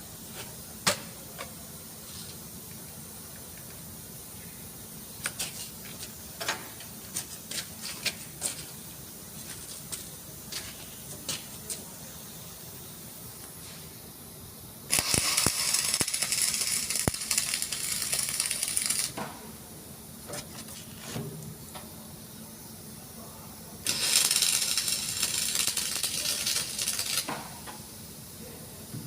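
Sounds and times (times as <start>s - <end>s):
loud crackling hiss: 14.8s - 19.2s, 22.1s - 28.9s.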